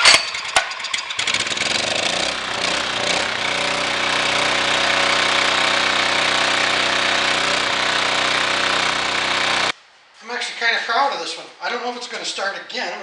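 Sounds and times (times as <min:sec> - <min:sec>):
generator engine running: 0:00.4 - 0:09.7.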